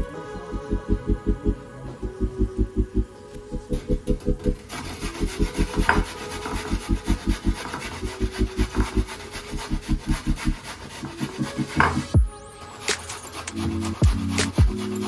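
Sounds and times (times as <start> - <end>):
music with fast low beat: 14.0 - 15.0.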